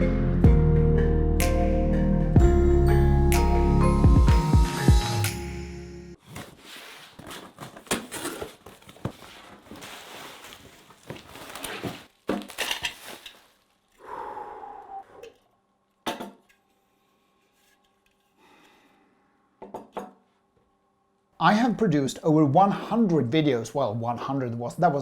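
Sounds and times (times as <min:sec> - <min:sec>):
hard objects clattering: 0:06.4 - 0:13.6.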